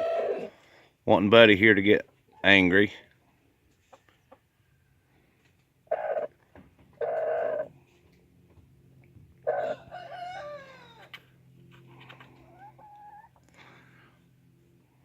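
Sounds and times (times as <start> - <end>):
low steady hum: 0.0 - 15.0
rooster crowing: 9.4 - 11.1.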